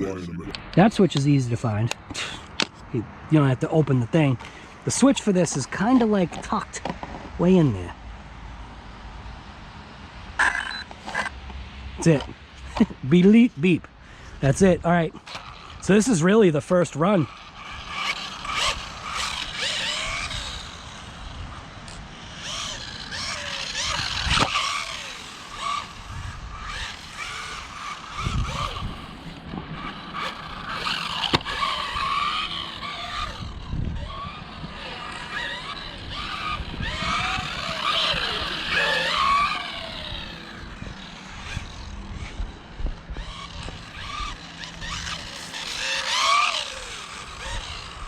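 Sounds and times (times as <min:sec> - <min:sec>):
electric motor whining: 0:14.3 - 0:48.0.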